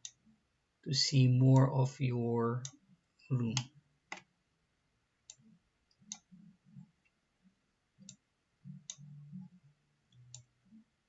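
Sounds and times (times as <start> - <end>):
computer mouse clicking: 5.3 - 6.3, 8.0 - 8.2.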